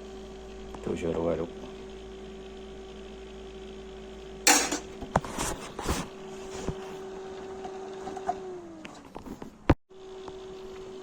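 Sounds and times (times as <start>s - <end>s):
steady electrical hum: 4.5s - 5.6s.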